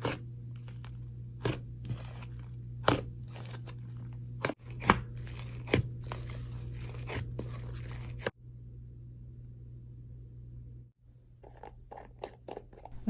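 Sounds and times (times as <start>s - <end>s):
hands squishing crunchy slime: 0.0s - 8.3s
faint steady hum: 0.0s - 11.4s.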